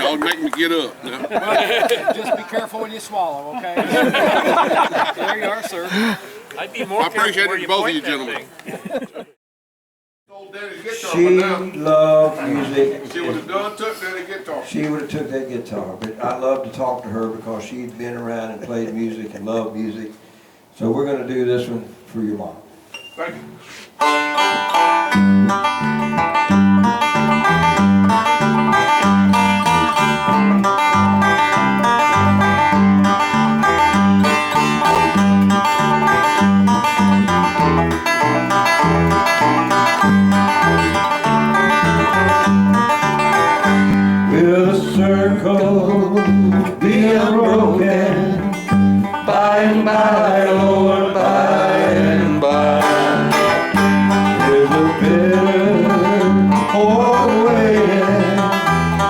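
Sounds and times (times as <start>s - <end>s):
banjo and guitar picking: 23.3s - 59.0s
person singing: 44.1s - 59.0s.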